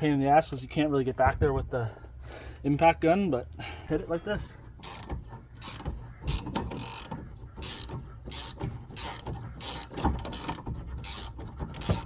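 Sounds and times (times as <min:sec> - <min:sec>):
ratchet wrench clicking: 0:04.8 - 0:12.0.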